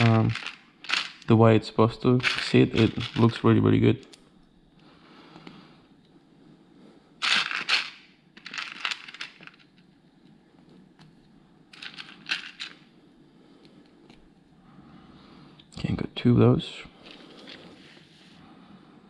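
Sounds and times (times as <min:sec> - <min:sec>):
plastic pieces rattling and clicking: 0:00.0 - 0:01.3, 0:02.2 - 0:03.4, 0:07.2 - 0:09.8, 0:11.7 - 0:12.8.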